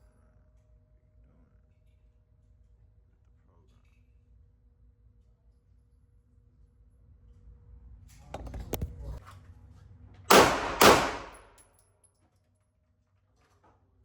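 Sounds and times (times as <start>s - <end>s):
pistol shots: 10.3s - 11.6s.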